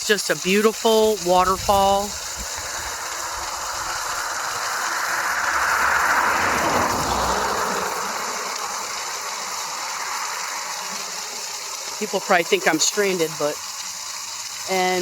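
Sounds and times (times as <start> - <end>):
waterfall rushing: 0.0 - 15.0
vehicle passing: 4.0 - 11.3.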